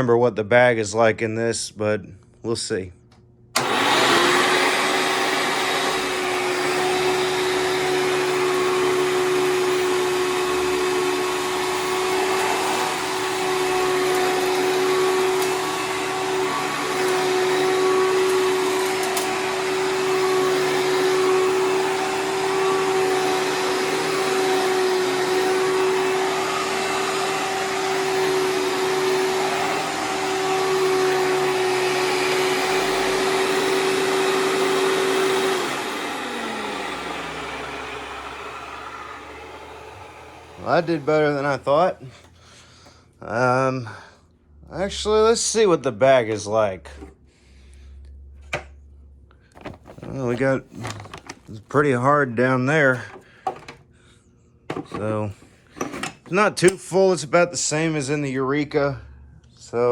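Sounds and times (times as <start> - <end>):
vacuum cleaner motor droning: 3.6 - 42.4, 49.6 - 51.6.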